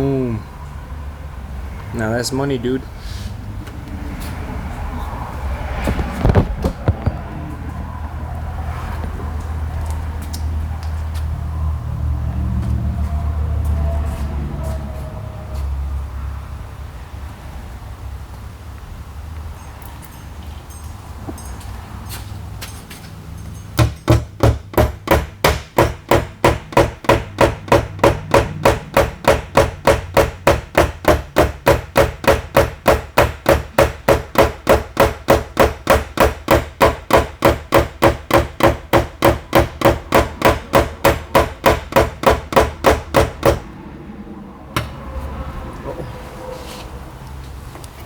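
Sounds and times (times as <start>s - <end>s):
hammer tapping on metal panel: 23.8s - 43.7s.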